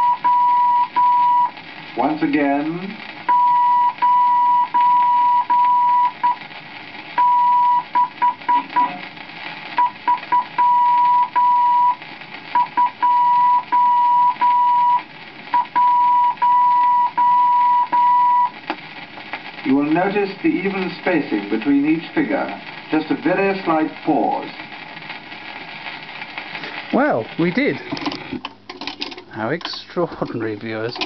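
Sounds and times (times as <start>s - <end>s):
morse code tone: 0.0s - 1.5s, 3.3s - 6.4s, 7.2s - 9.0s, 9.8s - 12.0s, 12.6s - 15.0s, 15.6s - 18.5s
record hiss: 0.0s - 31.0s
record clicks: 17.6s - 31.0s.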